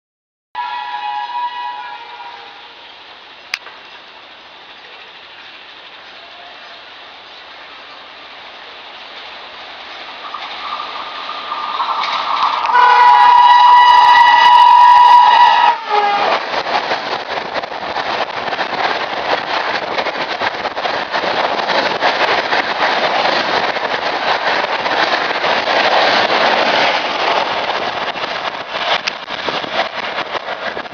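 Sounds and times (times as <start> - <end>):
train horn: 0.6 - 2.8, 12.6 - 16.4
train wheels on rail: 0.6 - 30.9.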